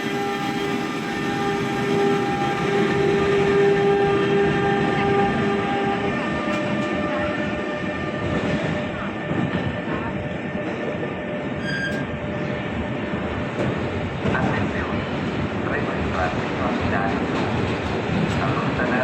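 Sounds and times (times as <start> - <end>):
train wheels rumbling on rails: 0.0 - 19.0
short high squeal: 11.6 - 12.1.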